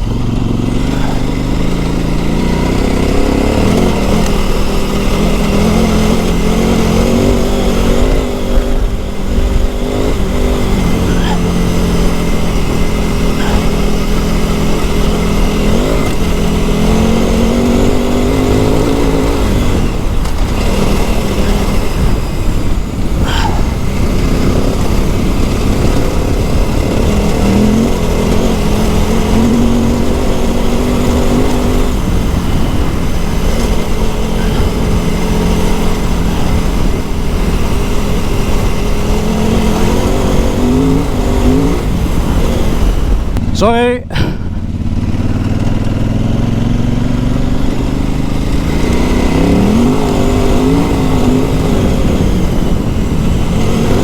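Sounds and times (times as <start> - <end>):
motorcycle engine revving off-road: 0.0 - 54.0.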